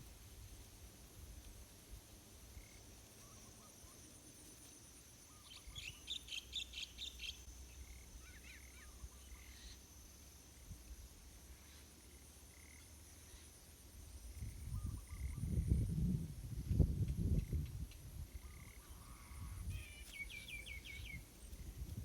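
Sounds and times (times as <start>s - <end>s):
faint high-pitched whine: 0.0s - 22.0s
small bird chirping: 5.2s - 9.8s, 17.3s - 22.0s
low wind rumble: 14.1s - 18.6s.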